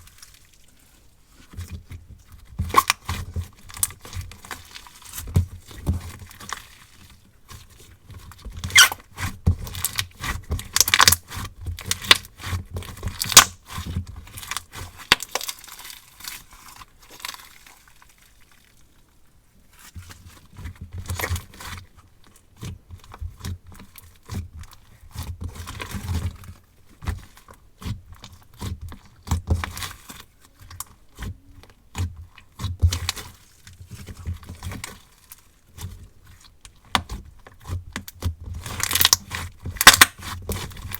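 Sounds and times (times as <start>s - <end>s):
hands squishing slime: 8.3s - 18.6s, 27.2s - 40.9s.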